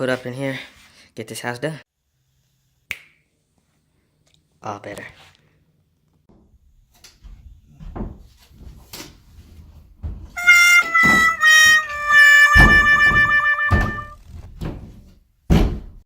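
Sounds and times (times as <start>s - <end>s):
heavy thuds: 7.7s - 16.0s
knocks from hanging a door: 10.0s - 16.0s
background music: 10.4s - 14.2s.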